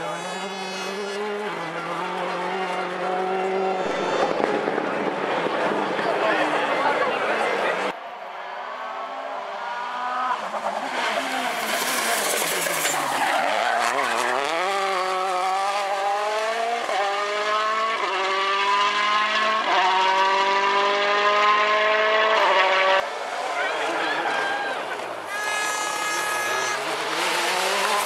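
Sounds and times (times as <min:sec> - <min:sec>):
rally car engine revving: 0:00.0 - 0:07.9, 0:09.4 - 0:28.0
tyres skidding: 0:10.3 - 0:16.8, 0:23.0 - 0:28.0.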